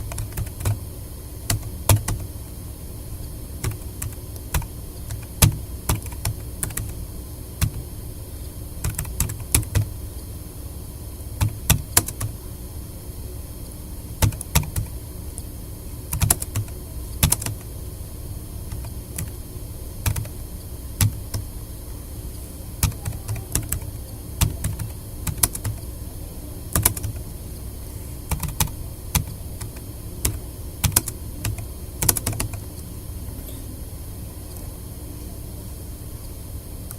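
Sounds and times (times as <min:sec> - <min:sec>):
keyboard typing clicks: 0:00.0 - 0:00.8, 0:01.5 - 0:02.3, 0:03.6 - 0:07.0, 0:07.6 - 0:07.8, 0:08.8 - 0:09.9, 0:11.4 - 0:12.4, 0:14.2 - 0:15.5, 0:16.2 - 0:17.7, 0:18.7 - 0:19.4, 0:20.0 - 0:20.4, 0:21.0 - 0:21.5, 0:22.8 - 0:25.9, 0:26.7 - 0:27.2, 0:28.3 - 0:32.9
steady low hum: 0:00.0 - 0:36.9.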